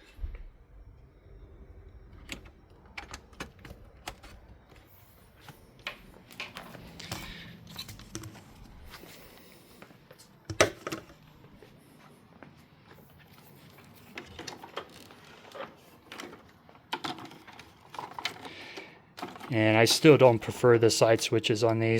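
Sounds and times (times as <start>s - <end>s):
hard plastic parts clicking: 2.1s - 4.9s, 10.5s - 11.2s, 14.1s - 19.6s.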